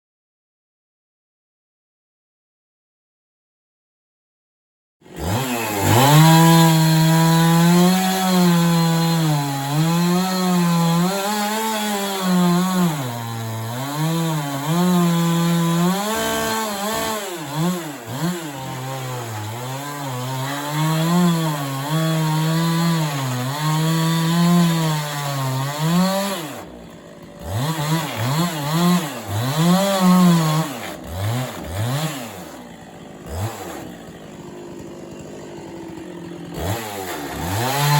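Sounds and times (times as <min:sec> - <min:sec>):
chainsaw revving through wood: 0:05.0 - 0:37.9.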